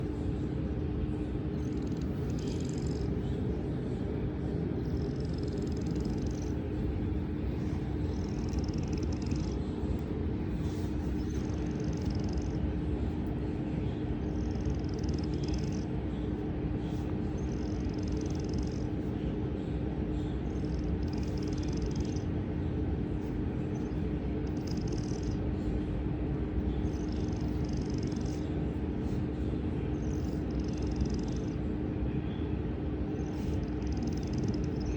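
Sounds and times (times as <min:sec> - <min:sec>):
steady low hum: 0:00.0 - 0:34.9
cat snoring: 0:01.6 - 0:03.4, 0:04.8 - 0:06.6, 0:07.5 - 0:12.6, 0:14.2 - 0:15.9, 0:16.9 - 0:18.9, 0:20.5 - 0:22.2, 0:24.4 - 0:25.4, 0:26.9 - 0:28.4, 0:30.0 - 0:31.6, 0:33.3 - 0:34.9.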